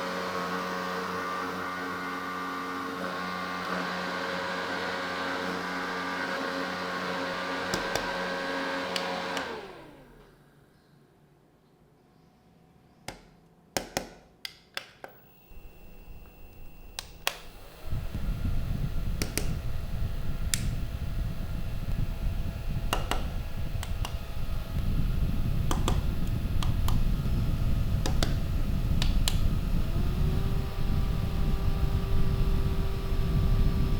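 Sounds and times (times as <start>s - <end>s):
sharp clicks of fan buttons: 7.7s - 8.2s, 13.8s - 29.6s
fan airflow rumbling on microphone: 15.6s - 33.9s.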